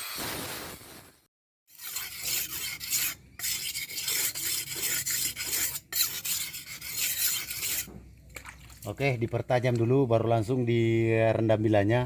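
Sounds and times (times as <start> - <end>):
knife blade being sharpened: 1.7 - 7.9.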